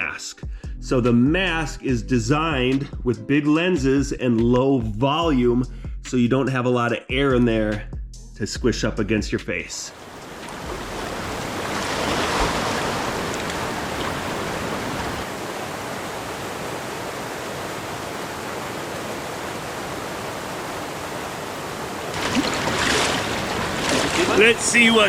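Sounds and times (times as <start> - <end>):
river whitewater rushing: 9.9 - 25.0.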